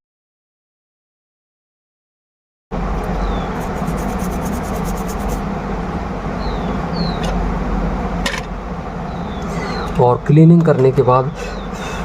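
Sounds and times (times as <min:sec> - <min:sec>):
background hum and hiss: 0:02.7 - 0:12.0
high falling chirps: 0:03.2 - 0:05.4.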